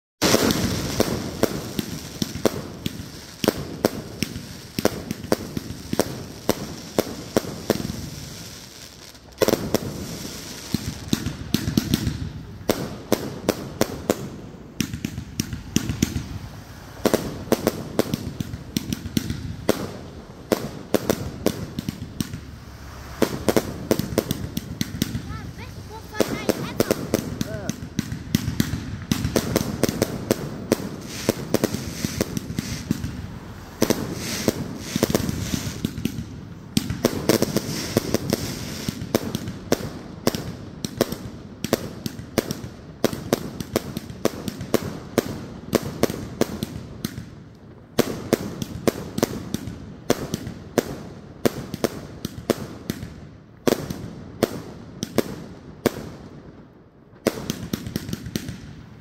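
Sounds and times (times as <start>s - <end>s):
fireworks bangs: 0.2s - 59.0s
fireworks crackling: 0.2s - 59.0s.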